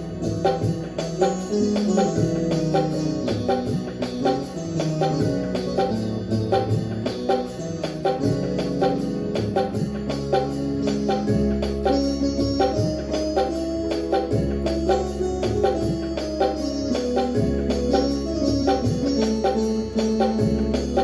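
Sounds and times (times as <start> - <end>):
bass line: 0.0 - 21.0
organ-like keyboard melody: 0.0 - 21.0
percussion beat: 0.0 - 21.0.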